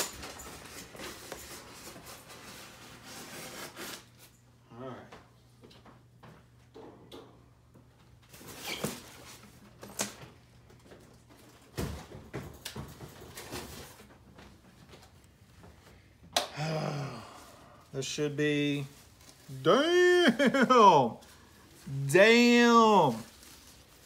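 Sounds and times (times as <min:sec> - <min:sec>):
cardboard and foam rustling: 0:00.0 - 0:04.2, 0:12.8 - 0:15.8, 0:18.6 - 0:24.0.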